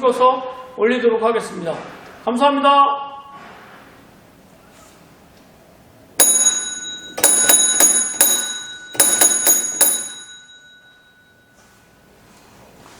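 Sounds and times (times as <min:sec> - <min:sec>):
small metal bell dinging: 0:06.2 - 0:11.7.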